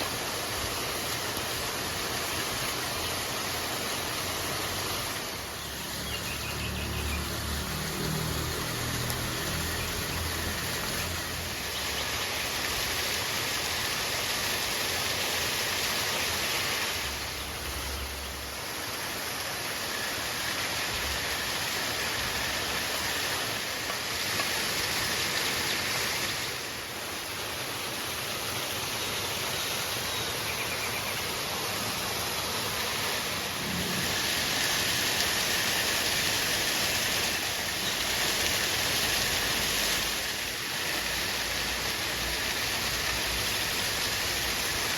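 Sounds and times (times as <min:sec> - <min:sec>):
river water rushing: 0:00.0 - 0:44.9.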